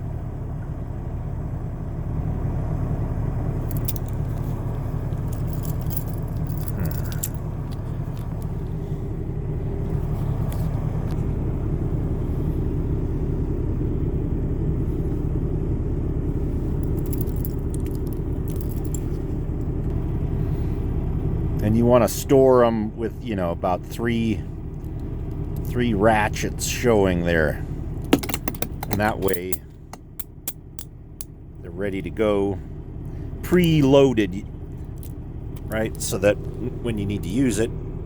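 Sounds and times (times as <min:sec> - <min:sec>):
low vehicle rumble: 0:00.0 - 0:38.0
handcuffs clicking and jingling: 0:03.7 - 0:04.4, 0:05.1 - 0:07.8, 0:16.8 - 0:19.2, 0:28.1 - 0:30.9.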